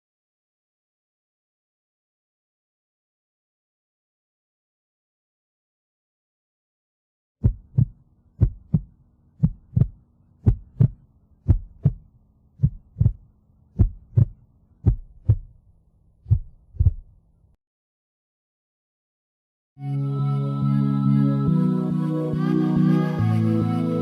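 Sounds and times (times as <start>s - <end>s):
heartbeat thumps: 7.4s - 15.6s, 16.2s - 17.2s
faint low hum: 7.4s - 17.6s.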